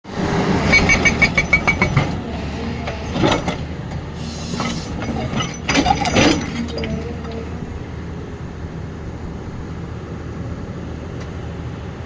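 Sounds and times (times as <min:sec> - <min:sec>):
diesel engine running: 0:00.0 - 0:12.0
hydraulic rock breaker hammering: 0:00.4 - 0:07.8.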